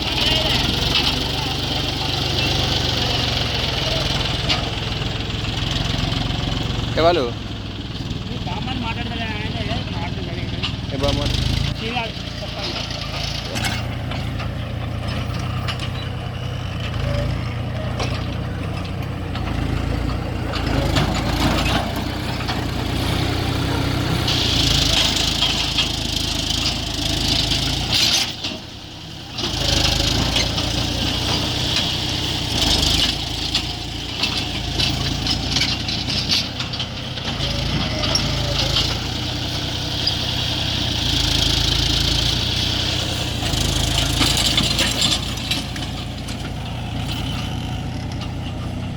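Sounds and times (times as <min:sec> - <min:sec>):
tractor engine running: 0:00.0 - 0:48.9.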